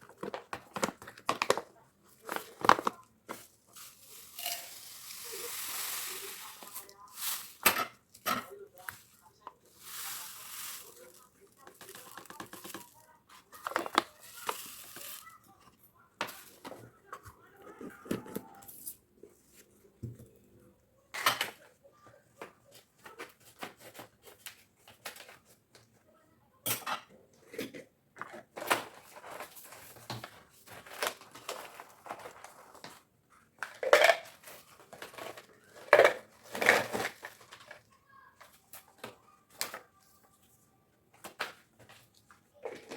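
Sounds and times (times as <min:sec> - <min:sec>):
kitchen utensils clinking: 0:03.8 - 0:08.6.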